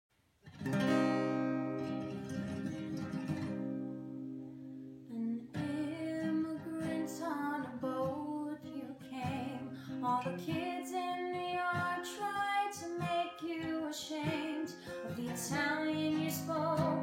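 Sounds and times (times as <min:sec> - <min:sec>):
acoustic guitar strummed: 0:00.4 - 0:17.0
person singing: 0:05.1 - 0:17.0.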